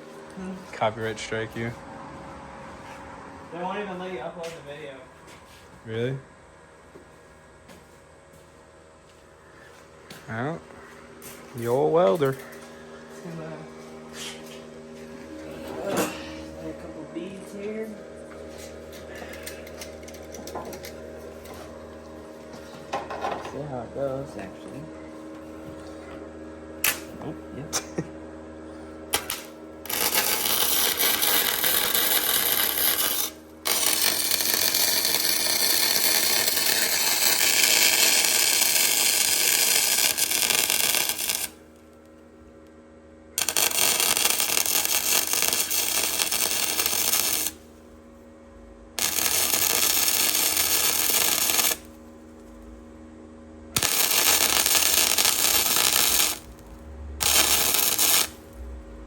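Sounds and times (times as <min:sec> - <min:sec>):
welding crackling sizzle: 0:11.3 - 0:12.6, 0:26.8 - 0:27.2, 0:29.1 - 0:41.9, 0:43.4 - 0:47.9, 0:49.0 - 0:52.8, 0:53.7 - 0:59.0.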